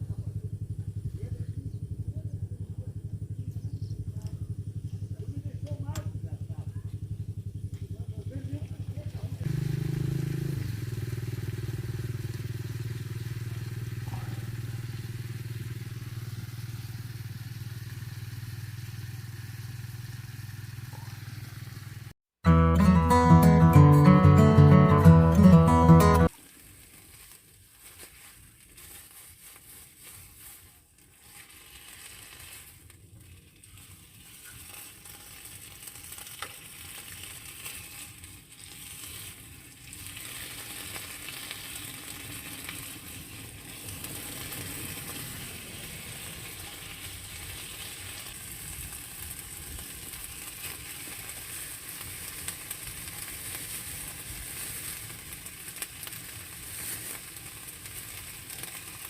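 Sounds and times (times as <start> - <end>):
food sizzling in a pan: 26.2 - 59.0.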